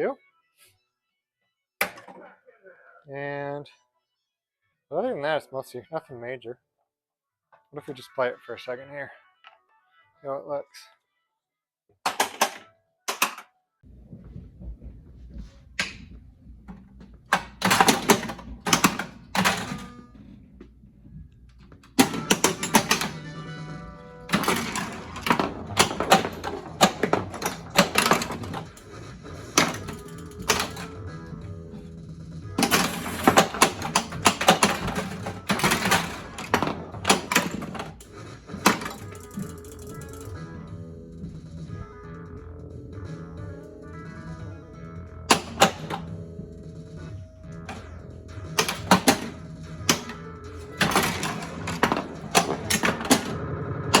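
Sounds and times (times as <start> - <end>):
pinball flippers and ball clacking: 12.1 - 13.4, 15.8 - 20.4, 21.6 - 31.2, 32.6 - 40.4, 45.3 - 46.4, 47.4 - 54.0.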